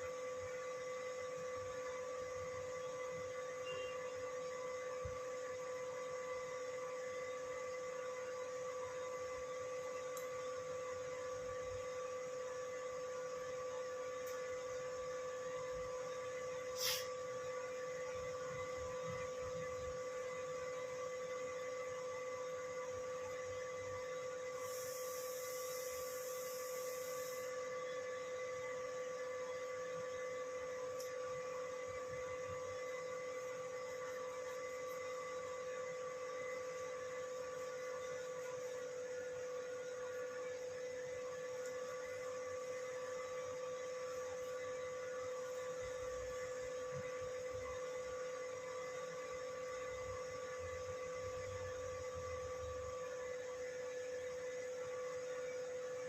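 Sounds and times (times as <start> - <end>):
electrical hum: 0.0 - 56.0
high hiss: 16.7 - 17.2, 24.6 - 27.5.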